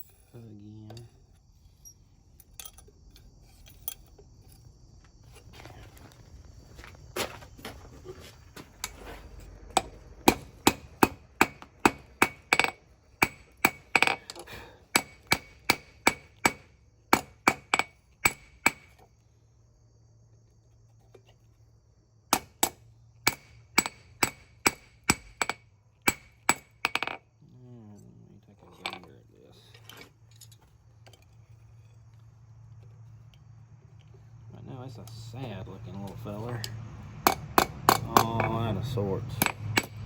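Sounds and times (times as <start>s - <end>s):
hammer striking hot steel on anvil: 9.8s - 14.2s, 14.9s - 19.0s, 22.3s - 27.2s, 37.2s - 40.0s.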